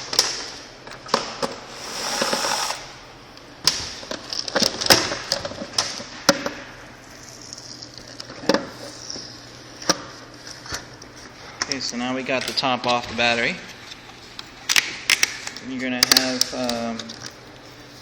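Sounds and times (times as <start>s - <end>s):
screwdriver scraping plastic: 1.7s - 2.9s.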